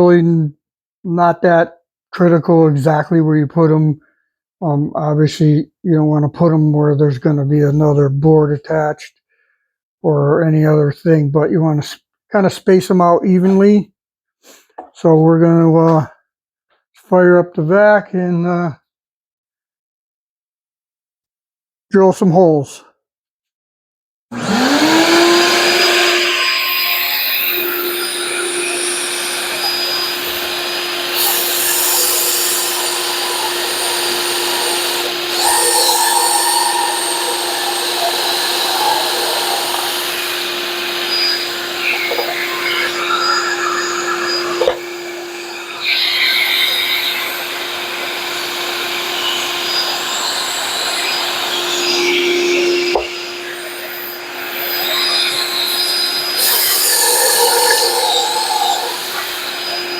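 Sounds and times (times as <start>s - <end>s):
drill boring into plywood: 24.4s - 59.9s
shop vacuum running: 24.4s - 59.9s.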